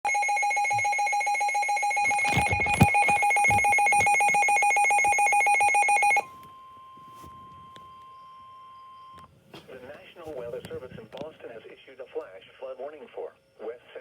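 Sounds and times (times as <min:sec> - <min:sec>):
pulsing warbling alarm tone: 0:00.1 - 0:06.2.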